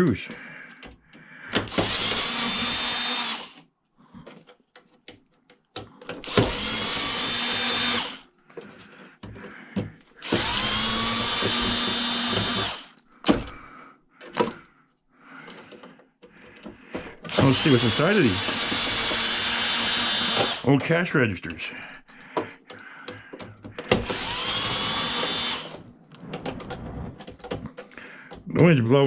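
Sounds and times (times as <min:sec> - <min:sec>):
clicks and knocks of parts: 0:00.1 - 0:02.3, 0:03.5 - 0:07.8, 0:14.2 - 0:14.8, 0:15.4 - 0:19.5, 0:20.2 - 0:28.9
power drill whining: 0:01.5 - 0:04.3, 0:05.8 - 0:13.6, 0:15.4 - 0:20.9, 0:22.7 - 0:28.4.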